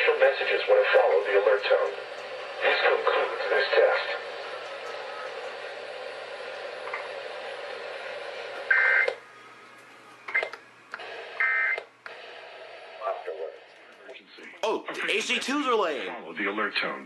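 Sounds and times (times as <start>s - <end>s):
radio hiss: 0.0s - 4.6s.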